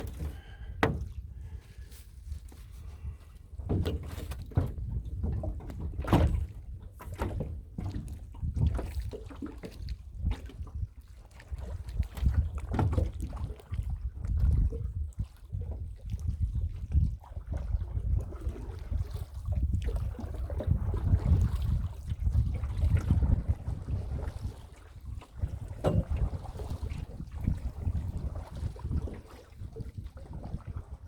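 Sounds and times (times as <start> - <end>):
knocks on boat hull: 0.0 - 1.2, 25.8 - 26.4
water lapping at boat hull: 0.0 - 31.0
wind rumble on microphone: 0.0 - 31.0.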